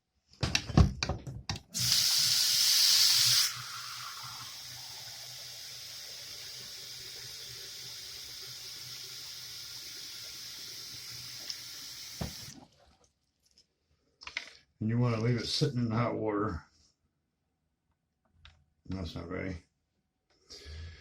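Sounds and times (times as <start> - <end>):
water running from a tap: 1.8 - 12.6.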